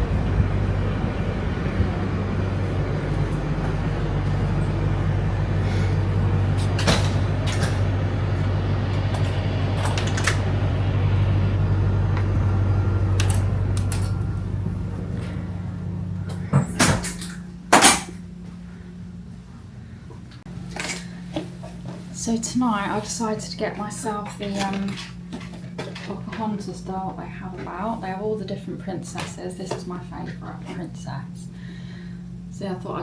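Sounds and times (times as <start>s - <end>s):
low mechanical hum: 0.0s - 33.0s.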